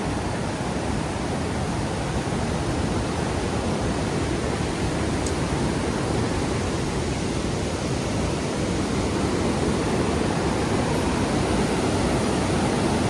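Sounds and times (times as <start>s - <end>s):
rushing river water: 0.0s - 13.0s
waterfall roar: 0.0s - 13.0s.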